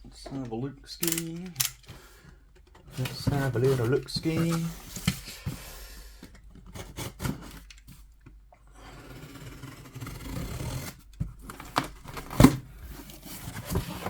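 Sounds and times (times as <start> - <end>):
packaging tearing and rustling: 10.5 - 14.0.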